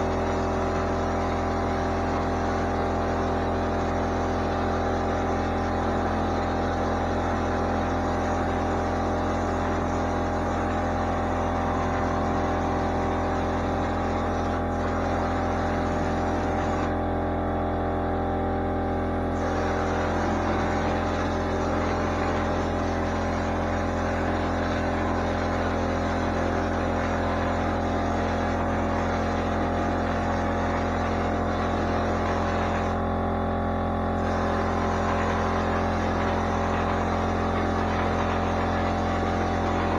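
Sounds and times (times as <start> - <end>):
air compressor humming: 0.0 - 39.9.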